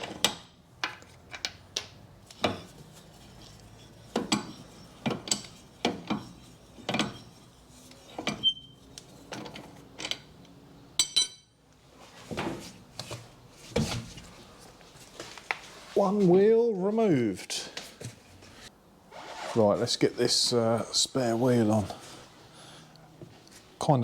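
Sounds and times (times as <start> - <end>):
knocks and scrapes of wheel removal: 0.0 - 10.4, 12.1 - 14.5
ringing metal clink: 11.0 - 11.5.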